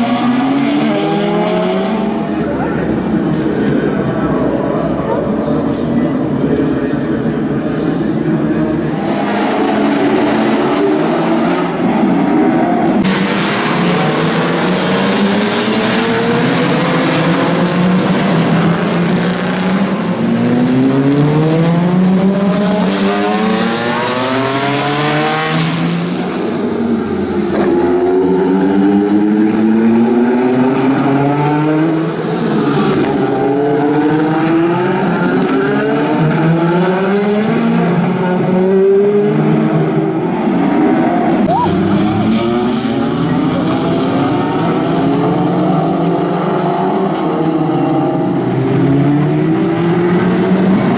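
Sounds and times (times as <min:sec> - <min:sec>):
racing cars accelerating: 0:00.0 - 0:50.9.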